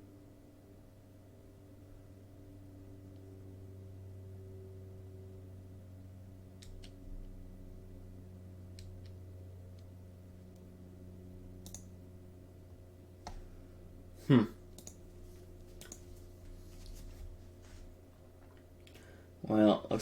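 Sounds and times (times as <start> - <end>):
low electrical hum: 0.0 - 20.0
computer mouse clicks: 6.6 - 7.0, 8.7 - 9.2, 11.6 - 11.9, 14.7 - 15.0, 15.7 - 16.1.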